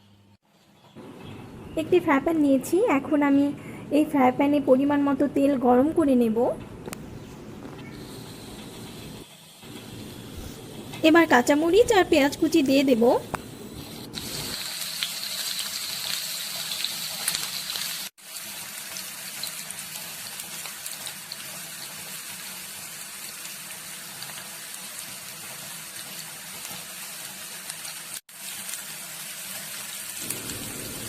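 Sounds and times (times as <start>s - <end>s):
onions sizzling in hot oil: 7.9s - 13.2s, 13.8s - 31.0s.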